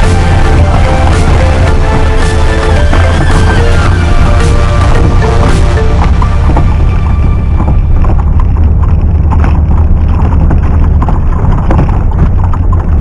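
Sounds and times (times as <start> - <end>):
background music: 0.0 - 8.3
knocks and clunks: 0.0 - 13.0
low engine rumble: 0.0 - 13.0.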